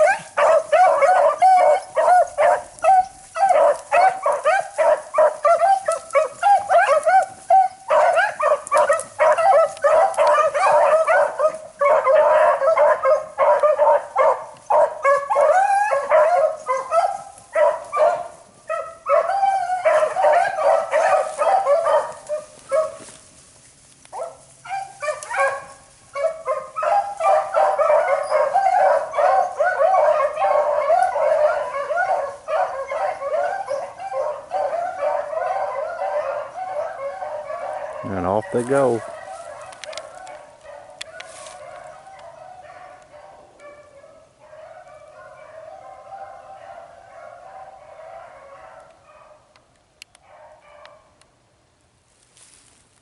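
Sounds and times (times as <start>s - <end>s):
pack of dogs baying: 0.0s - 51.3s.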